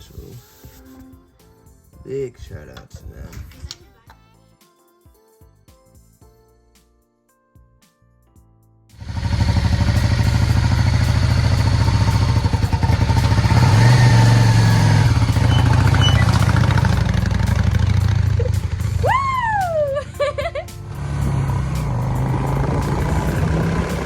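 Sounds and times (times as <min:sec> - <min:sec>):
motorcycle engine running: 0:09.0 - 0:19.2, 0:20.8 - 0:24.0.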